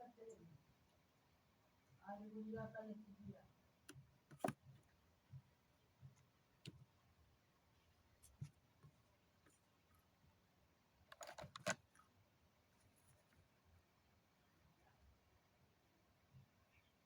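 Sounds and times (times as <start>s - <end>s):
faint clicks and taps: 2.6s - 7.0s, 11.1s - 12.1s.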